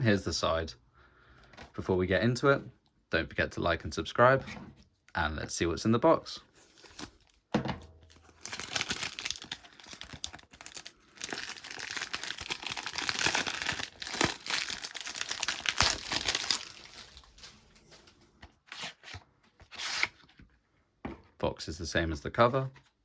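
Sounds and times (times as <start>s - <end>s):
plastic wrap crinkling: 8.1s - 18.3s
packaging clicks: 8.3s - 18.1s.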